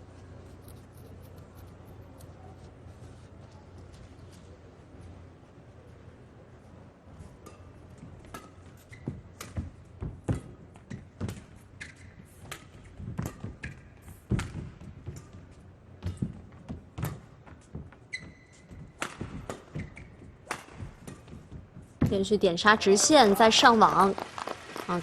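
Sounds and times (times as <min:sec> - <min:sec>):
shoe squeaks: 0:08.7 - 0:09.4, 0:18.0 - 0:20.4.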